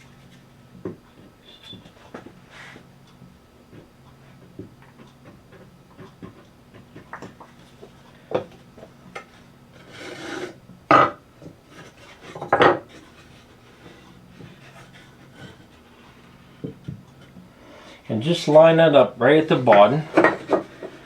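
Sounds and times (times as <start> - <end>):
wood sliding scrape: 9.8 - 10.6, 19.6 - 21.0
wooden boards knocking: 10.9 - 11.2, 12.3 - 12.9, 19.7 - 21.0.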